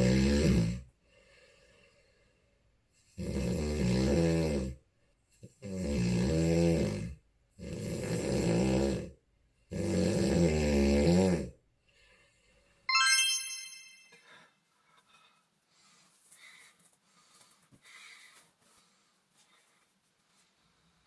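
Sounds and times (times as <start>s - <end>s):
person snoring: 0.0s - 0.8s, 3.2s - 4.8s, 5.6s - 9.1s, 9.7s - 11.5s
bright chime: 12.9s - 14.4s.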